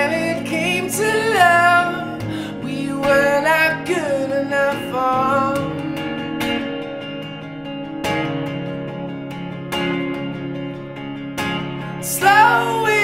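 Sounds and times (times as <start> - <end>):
woman singing: 0.0 - 6.0, 12.0 - 13.0
acoustic guitar: 0.0 - 13.0.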